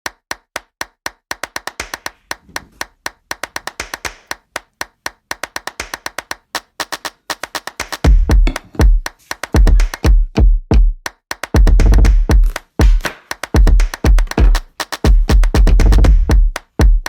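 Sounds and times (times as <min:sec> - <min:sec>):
clap-like percussion beat: 0:00.0 - 0:17.0
heavy bass drum beats: 0:08.0 - 0:11.0, 0:11.6 - 0:17.0.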